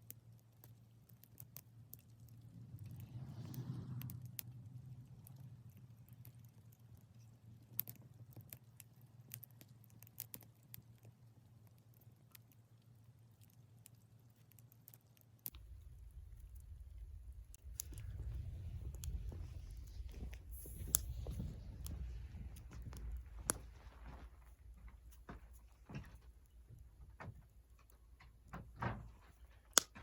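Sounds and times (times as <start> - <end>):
low steady hum: 0.0 - 30.0
wood fire crackling: 14.5 - 30.0
low rumbling noise: 15.5 - 30.0.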